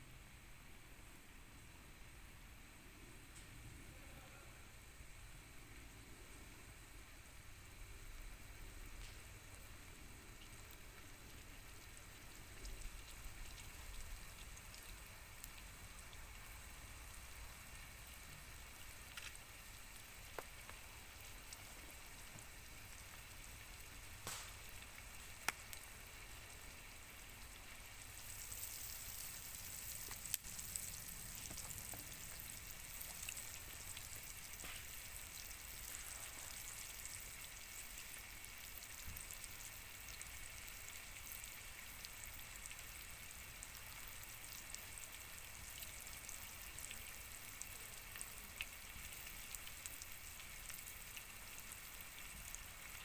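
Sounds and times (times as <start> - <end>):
food sizzling in pan: 7.3 - 53.0
sharp popping of fat: 24.2 - 24.7.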